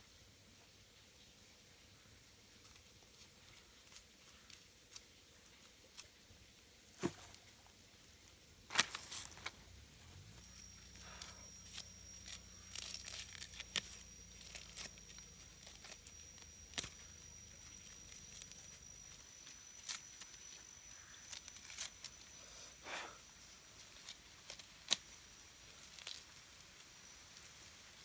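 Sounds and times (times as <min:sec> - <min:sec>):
faint high whine: 0:00.0 - 0:28.0
low hum: 0:08.4 - 0:28.0
crackles and clicks: 0:08.7 - 0:22.5, 0:23.4 - 0:28.0
tearing sounds: 0:10.4 - 0:27.2.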